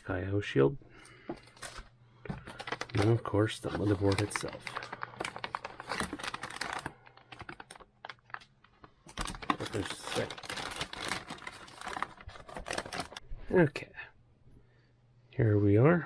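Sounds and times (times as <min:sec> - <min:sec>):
packaging crackling and rustling: 0:01.4 - 0:13.2.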